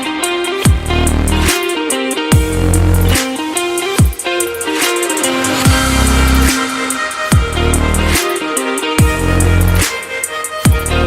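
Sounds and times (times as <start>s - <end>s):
electronic dance music: 2.4s - 11.0s.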